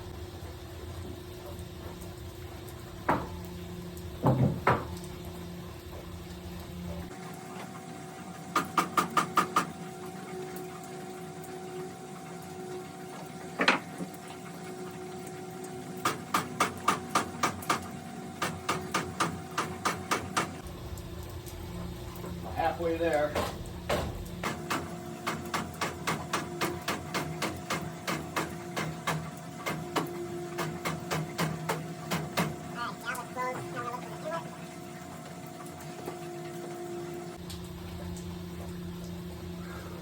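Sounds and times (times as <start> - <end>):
steady hum: 16.0 - 40.0.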